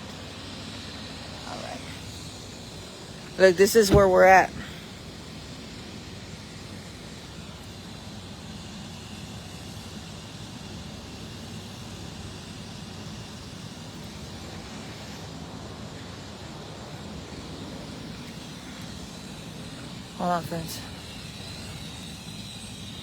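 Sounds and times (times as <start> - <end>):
engine drone: 0.0 - 23.0.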